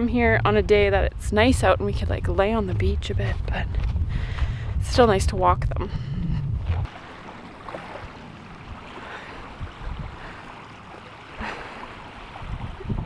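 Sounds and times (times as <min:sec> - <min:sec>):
wind rumbling on microphone: 0:00.0 - 0:07.0, 0:07.9 - 0:10.6, 0:11.4 - 0:13.0
small waves washing onto sand: 0:06.9 - 0:12.9.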